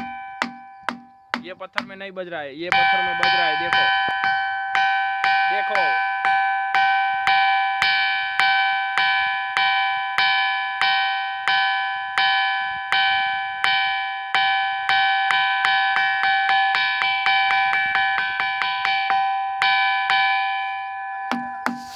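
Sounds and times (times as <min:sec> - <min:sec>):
stone struck with stone ringing: 0:00.0 - 0:02.1, 0:02.7 - 0:08.6, 0:21.2 - 0:21.9.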